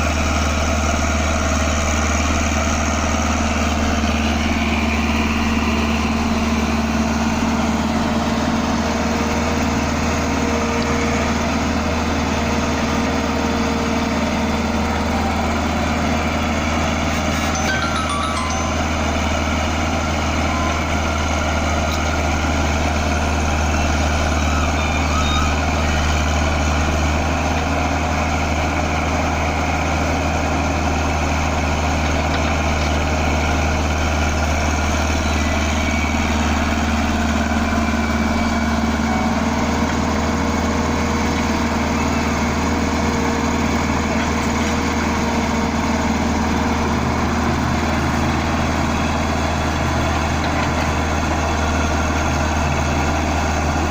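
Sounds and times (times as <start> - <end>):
excavator diesel engine running: 0.0 - 53.9
higher steady tone: 17.5 - 22.4.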